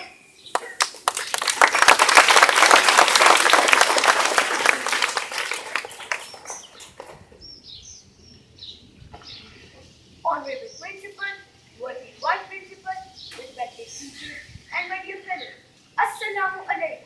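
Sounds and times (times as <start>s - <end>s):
audience clapping: 0.5s - 6.8s.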